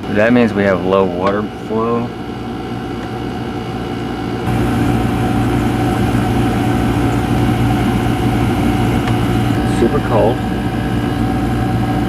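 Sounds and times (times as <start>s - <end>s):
air-conditioning unit humming: 0.0s - 12.0s.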